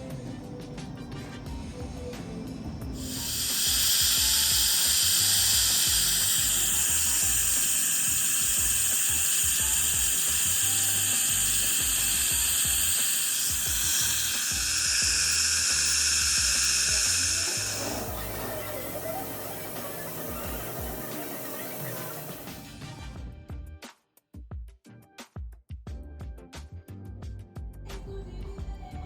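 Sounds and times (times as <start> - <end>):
dental equipment hissing: 0.0 - 22.7.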